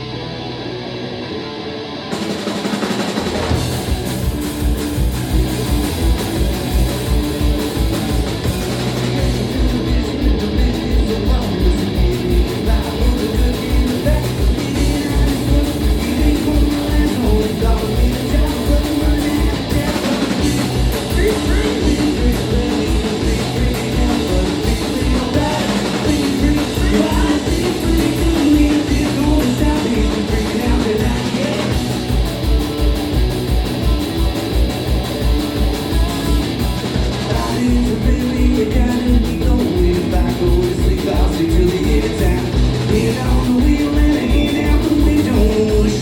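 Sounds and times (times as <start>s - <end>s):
bass guitar: 0.0s - 46.0s
drums: 0.0s - 46.0s
electric guitar: 0.0s - 46.0s
person singing: 8.7s - 32.0s, 37.2s - 46.0s.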